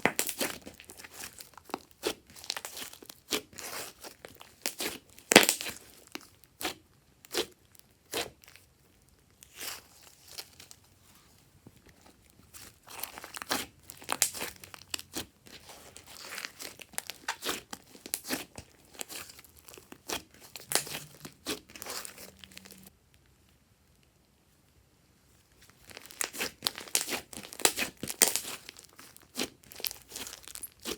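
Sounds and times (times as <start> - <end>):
slime squished by hand: 0.0 - 8.7, 12.0 - 22.9, 25.6 - 30.9.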